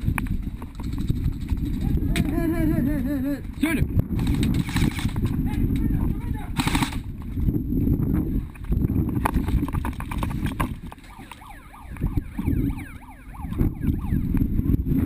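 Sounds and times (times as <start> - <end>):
wind buffeting microphone: 0.0 - 15.0
sharp cracks: 4.2 - 5.9, 6.5 - 7.1.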